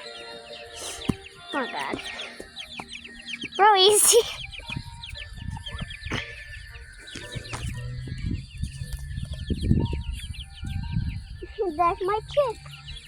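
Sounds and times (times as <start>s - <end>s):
chicks peeping: 0.0s - 13.0s.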